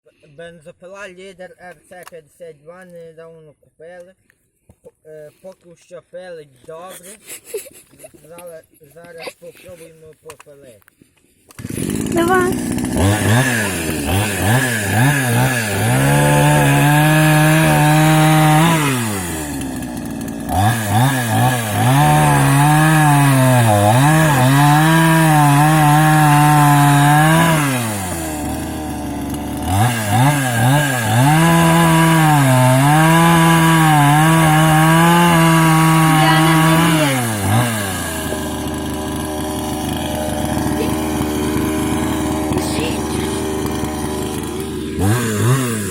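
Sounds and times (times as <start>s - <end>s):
chainsaw cutting firewood: 11.4s - 45.9s.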